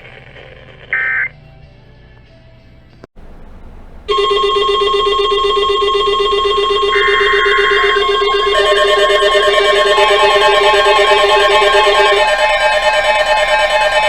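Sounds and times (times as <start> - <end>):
electronic ringtone tones: 4.1 - 14.0
screechy electronic burst: 4.1 - 14.0
warbling electronic note: 4.1 - 14.0.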